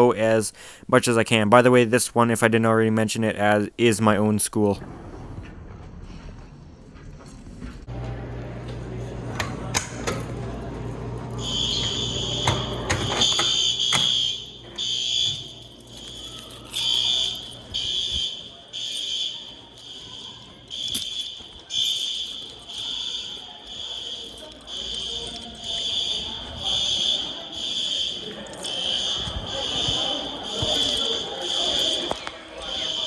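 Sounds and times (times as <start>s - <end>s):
fire alarm pulsing tone: 11.3s - 33.0s.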